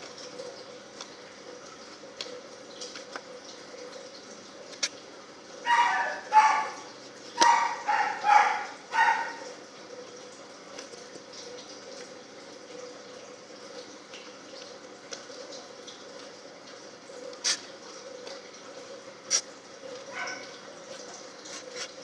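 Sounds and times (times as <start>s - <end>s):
small dog yapping: 5.6s - 9.5s, 20.1s - 20.6s.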